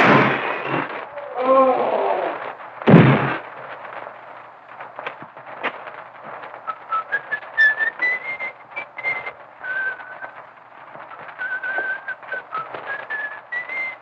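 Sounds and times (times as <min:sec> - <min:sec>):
film soundtrack crackle: 0:00.0 - 0:14.0
person whistling a tune: 0:06.9 - 0:10.3, 0:11.4 - 0:14.0.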